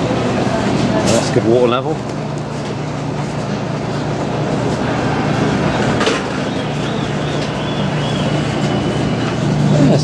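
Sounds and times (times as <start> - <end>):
washing machine running: 0.0 - 10.0.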